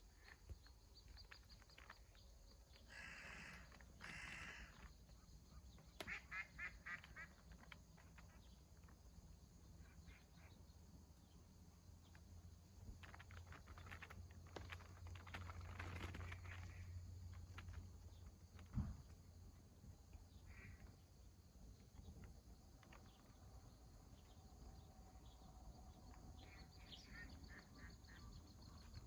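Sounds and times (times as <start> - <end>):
bird calls: 0.0 - 9.0, 20.1 - 21.1, 21.7 - 29.0.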